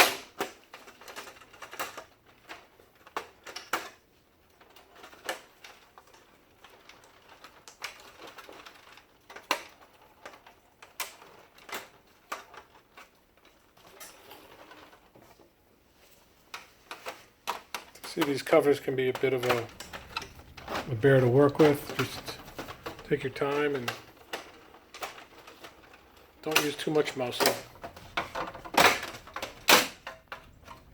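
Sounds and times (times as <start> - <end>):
plastic parts snapping: 0.0 - 4.0, 16.5 - 30.9
soft rustling of parts: 0.0 - 30.9
plastic printer covers clicking: 16.6 - 30.9.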